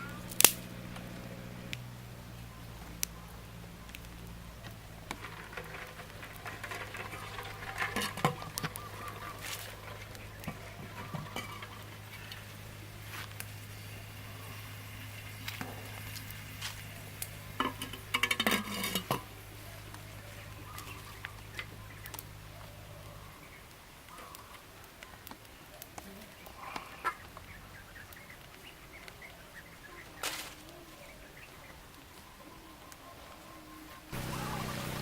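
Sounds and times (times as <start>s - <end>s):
steady low hum: 0.0s - 24.4s
chickens clucking: 2.4s - 35.0s.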